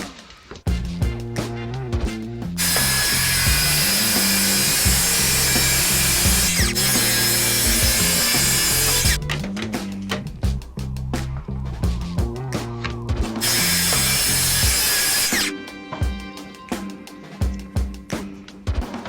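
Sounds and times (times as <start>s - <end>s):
power grinder grinding metal: 2.6s - 9.2s, 13.4s - 15.5s.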